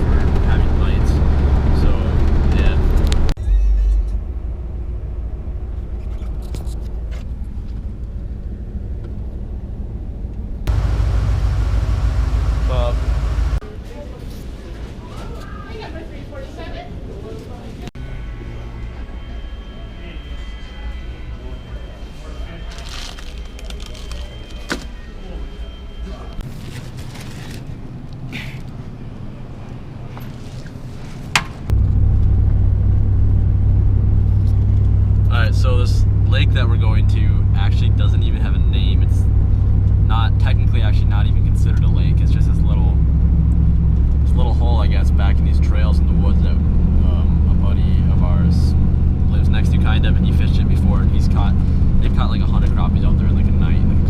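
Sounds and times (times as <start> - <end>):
vehicle engine and road noise: 0.0 - 14.9, 26.4 - 54.0.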